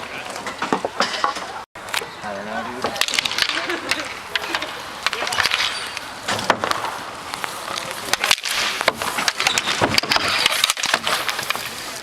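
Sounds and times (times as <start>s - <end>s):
hockey sticks and puck clacking: 0.0s - 2.1s, 2.7s - 12.0s
skates on ice: 2.8s - 12.0s.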